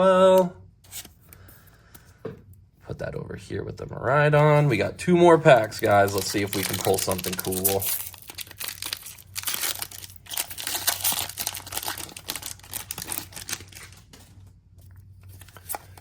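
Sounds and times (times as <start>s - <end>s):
foil wrapper tearing and crinkling: 5.6s - 14.2s.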